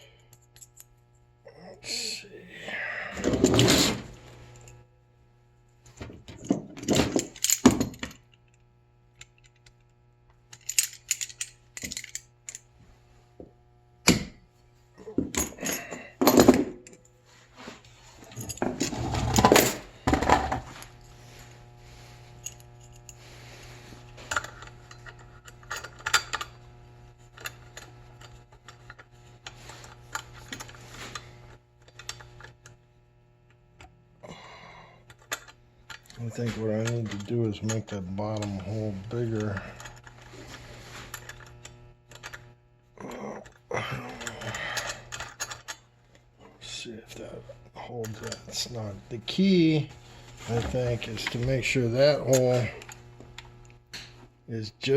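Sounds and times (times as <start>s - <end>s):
low steady hum: 0.0s - 54.9s
small metal parts clinking: 6.4s - 8.6s, 10.5s - 12.7s, 15.2s - 17.1s, 18.2s - 20.3s, 24.2s - 26.6s, 35.1s - 41.5s, 43.4s - 45.8s.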